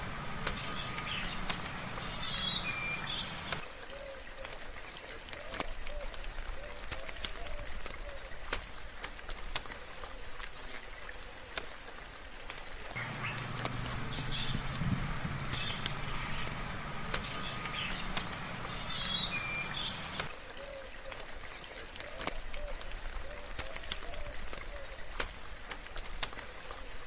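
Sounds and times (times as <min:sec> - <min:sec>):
birds chirping: 0:00.0 - 0:03.6, 0:12.9 - 0:21.1
low steady hum: 0:00.0 - 0:03.6, 0:12.9 - 0:20.3
raindrops: 0:00.0 - 0:27.0.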